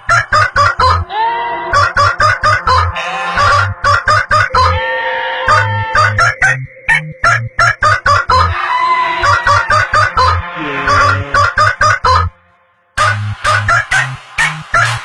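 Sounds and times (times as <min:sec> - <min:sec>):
rooster crowing: 0:00.0 - 0:06.6, 0:08.1 - 0:12.3, 0:13.0 - 0:15.0
chicken clucking: 0:00.0 - 0:12.3, 0:13.0 - 0:15.0
music with steady beat: 0:01.8 - 0:04.8, 0:09.5 - 0:15.0.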